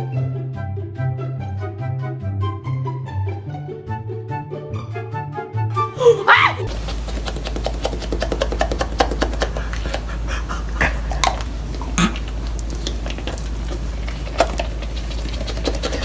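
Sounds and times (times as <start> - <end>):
steady low hum: 6.7 - 16.0.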